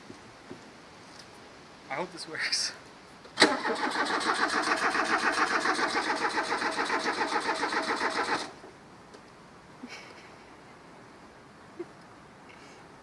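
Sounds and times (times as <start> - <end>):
starter cranking engine: 3.4 - 8.6.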